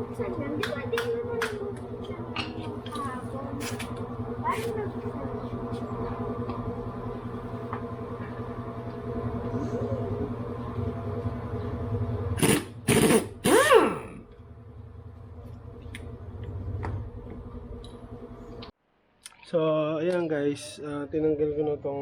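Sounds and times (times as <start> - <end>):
steady mechanical hum: 0.0 - 18.8
power tool whirring: 12.4 - 14.3.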